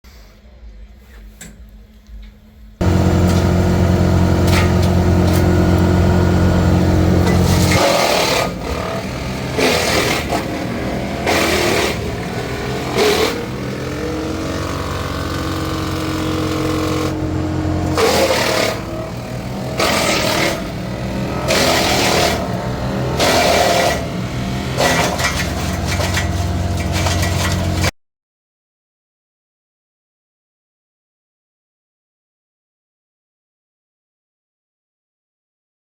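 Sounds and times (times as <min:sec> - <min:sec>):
branches crackling in chipper: 0:02.8 - 0:07.8
woodchipper engine running: 0:02.8 - 0:27.9.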